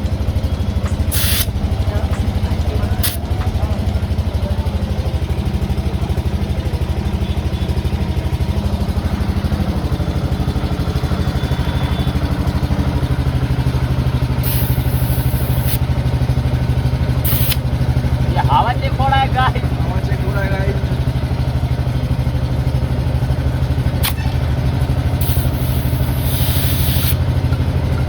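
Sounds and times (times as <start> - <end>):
engine idling: 0.0 - 28.0
air hissing from tyre valve: 1.0 - 1.8, 3.0 - 3.2, 14.0 - 16.4, 17.2 - 18.0, 24.0 - 27.4.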